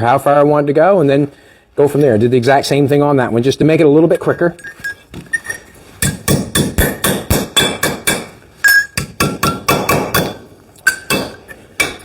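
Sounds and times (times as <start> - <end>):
hammer tapping on metal: 6.0 - 12.0.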